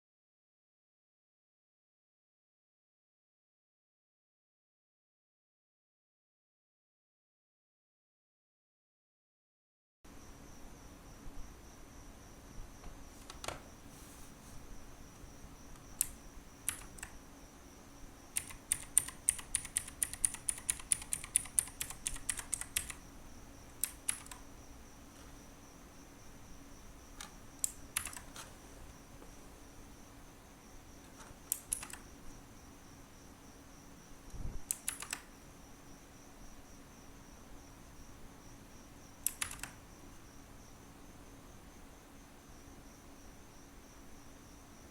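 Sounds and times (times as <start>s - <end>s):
clicky mechanical keyboard typing: 16.0s - 17.2s, 18.3s - 23.0s, 23.8s - 24.5s, 27.2s - 28.5s, 31.1s - 32.1s, 34.7s - 35.3s, 39.2s - 39.8s.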